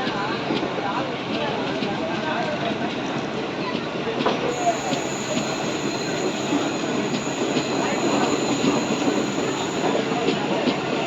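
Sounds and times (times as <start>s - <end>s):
train coaches rolling on rails: 3.0s - 11.0s
high wheel whine: 4.4s - 11.0s.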